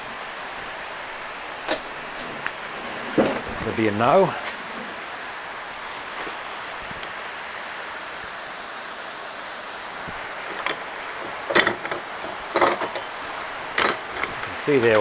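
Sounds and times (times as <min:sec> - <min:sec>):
steady background hiss: 0:00.0 - 0:15.0
metal knocks and clanks in a vise: 0:01.6 - 0:03.8, 0:04.4 - 0:05.1, 0:10.0 - 0:15.0.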